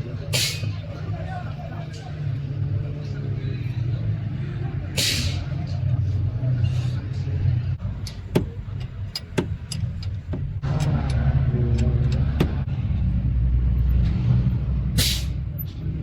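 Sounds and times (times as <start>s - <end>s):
vehicle engine running: 0.0s - 16.0s
sharp clicks and knocks: 7.8s - 12.7s.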